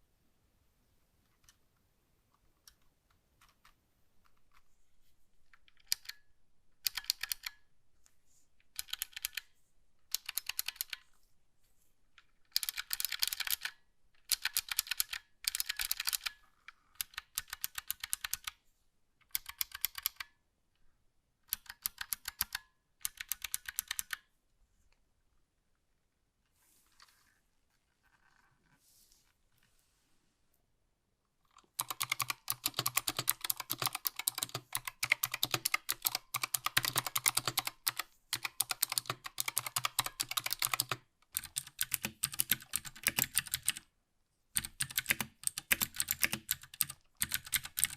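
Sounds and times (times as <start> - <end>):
typing on a keyboard: 5.5 - 7.7, 8.7 - 11.0, 12.2 - 18.6, 19.2 - 20.4, 21.5 - 24.3, 31.5 - 43.9, 44.6 - 47.9.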